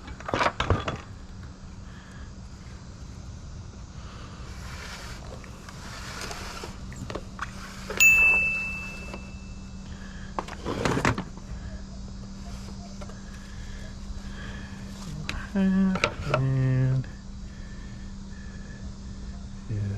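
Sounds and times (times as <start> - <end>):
steady low hum: 0.0 - 19.9
sharp metallic clang: 8.0 - 9.6.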